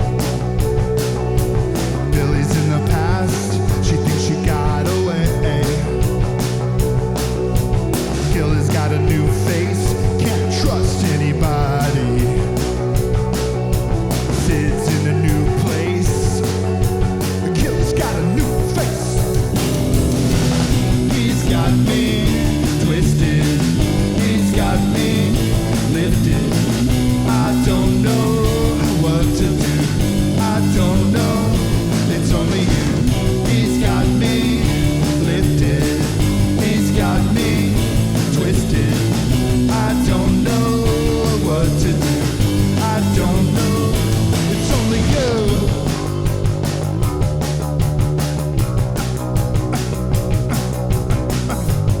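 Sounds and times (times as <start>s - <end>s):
bass guitar: 0.0s - 52.0s
electric guitar: 0.0s - 52.0s
person singing: 2.0s - 6.4s, 8.1s - 13.3s, 14.3s - 19.6s, 20.7s - 46.5s.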